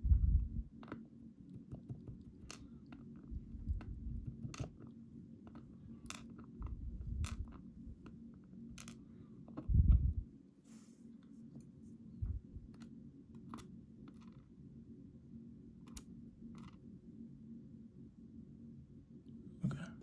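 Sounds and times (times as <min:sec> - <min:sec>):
lock pins clicking and tapping: 0:00.8 - 0:03.2, 0:03.8 - 0:04.9, 0:05.5 - 0:06.6, 0:07.2 - 0:09.0, 0:12.7 - 0:14.4, 0:15.9 - 0:16.8.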